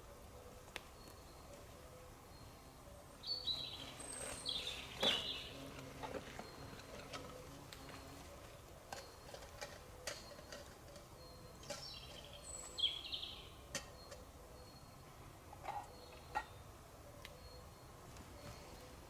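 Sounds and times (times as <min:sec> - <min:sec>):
high bird chirp: 0:03.2 - 0:05.6, 0:11.2 - 0:14.9.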